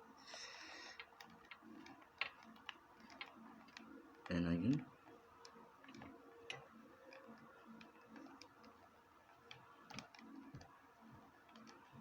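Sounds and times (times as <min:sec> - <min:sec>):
controller stick plastic clicks: 0:01.0 - 0:04.8, 0:05.4 - 0:10.7, 0:11.4 - 0:11.8.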